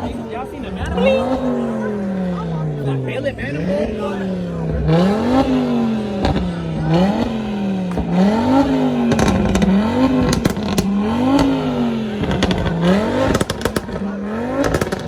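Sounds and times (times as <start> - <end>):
car engine revving: 0.0 - 15.0
sharp exhaust cracks: 4.3 - 15.0.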